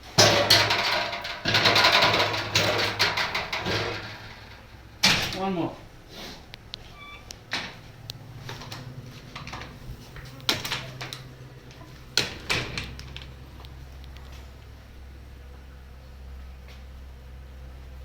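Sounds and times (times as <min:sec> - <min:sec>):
wooden frames clicking and knocking: 0:00.0 - 0:05.6, 0:07.2 - 0:14.7
steady low hum: 0:00.0 - 0:18.0.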